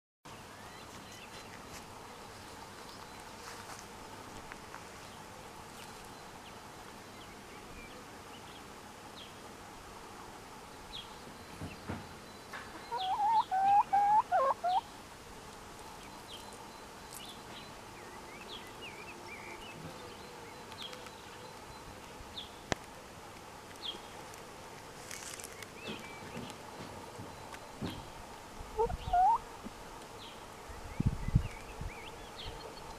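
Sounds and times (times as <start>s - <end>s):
chicken calling: 12.8s - 14.8s, 28.7s - 29.4s.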